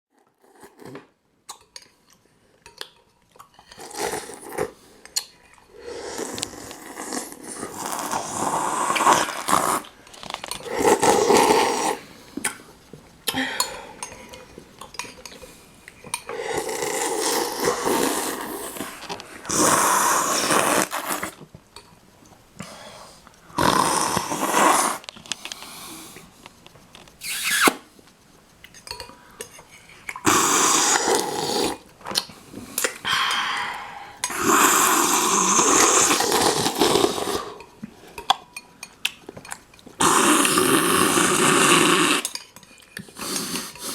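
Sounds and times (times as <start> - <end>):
slurping soup: 3.5 - 12.7, 16.2 - 21.4, 23.5 - 26.3, 29.7 - 38.2, 39.9 - 42.4, 43.0 - 43.9.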